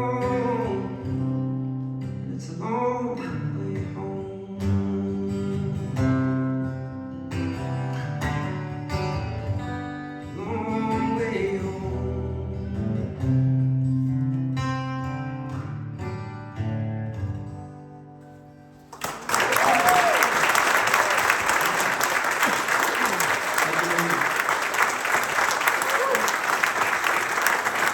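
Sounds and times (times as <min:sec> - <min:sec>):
acoustic guitar strumming: 0:00.0 - 0:18.9.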